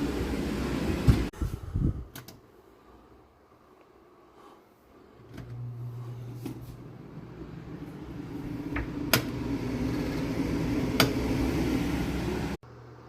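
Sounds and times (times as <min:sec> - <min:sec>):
range hood blower humming: 0:00.0 - 0:01.3, 0:05.0 - 0:13.0.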